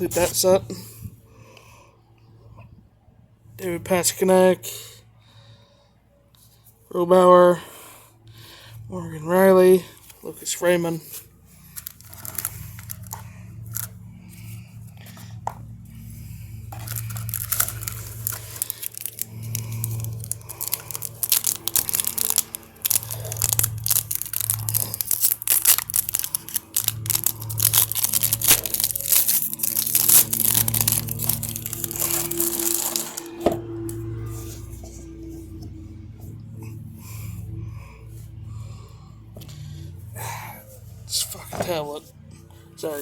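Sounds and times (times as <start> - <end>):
foil wrappers tearing and crinkling: 11.8 - 13.9, 16.7 - 33.5.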